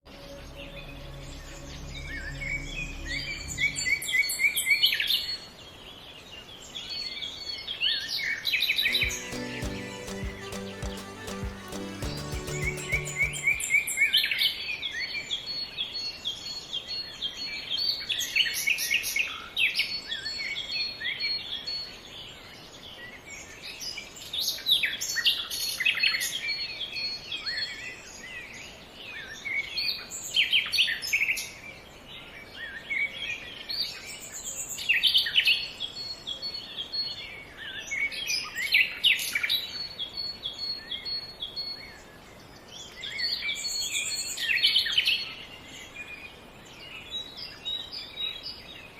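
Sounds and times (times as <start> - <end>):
small birds chirping: 8.9 - 14.0.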